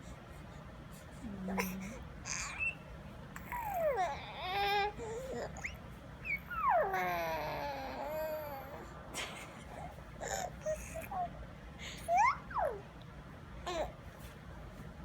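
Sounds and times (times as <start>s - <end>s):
baby squealing and cooing: 2.3s - 2.8s, 12.1s - 12.9s.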